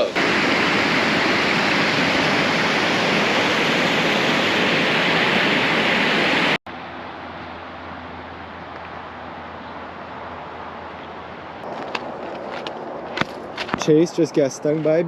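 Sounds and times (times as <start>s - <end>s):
waterfall rushing: 0.0s - 6.6s.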